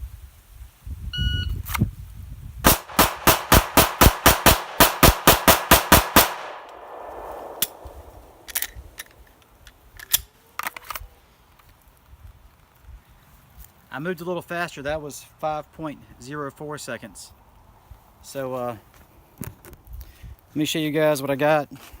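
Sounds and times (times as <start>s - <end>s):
rapid pistol shots: 2.7s - 9.0s
gun handling clicks: 2.7s - 11.7s.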